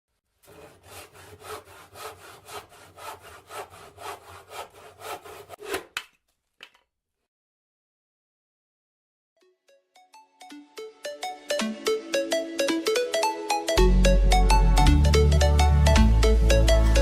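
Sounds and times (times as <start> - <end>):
rapid sawing strokes: 0.3 - 5.9.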